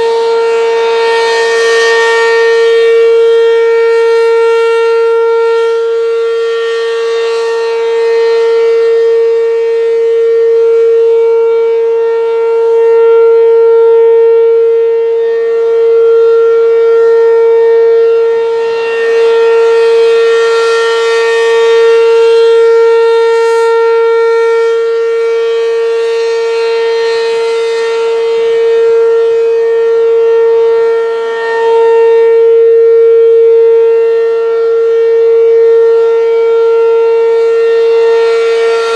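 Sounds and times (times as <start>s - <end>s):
rotating warning siren: 0.0s - 38.9s.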